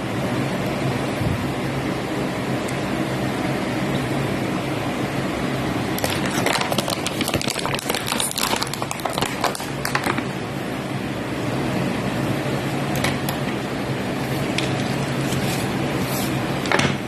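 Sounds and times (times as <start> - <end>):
fan-like hum: 0.0 - 17.0
plastic packaging crinkling: 6.0 - 10.2.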